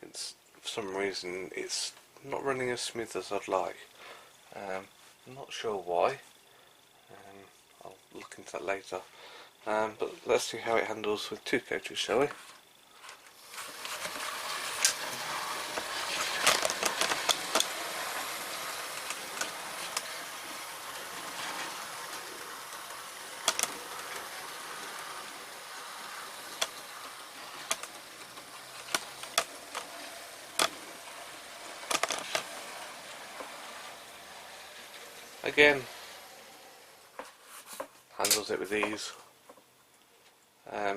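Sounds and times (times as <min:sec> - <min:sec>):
model train motor whirring: 0:12.4 - 0:37.4
wheels clicking over rail joints: 0:13.4 - 0:37.4.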